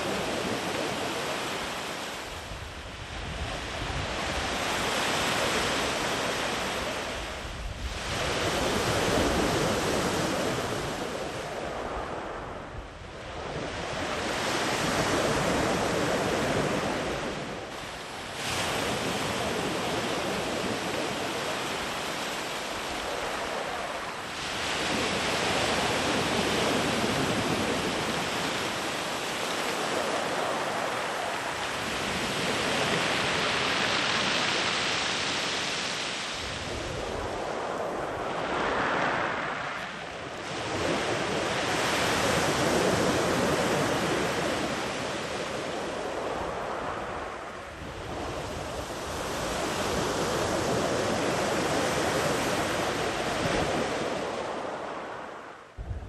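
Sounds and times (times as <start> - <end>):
surf breaking on beach: 23.1 - 54.9.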